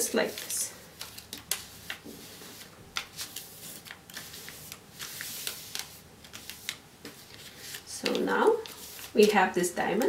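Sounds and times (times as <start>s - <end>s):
paper crinkling and rustling: 0.0s - 10.0s.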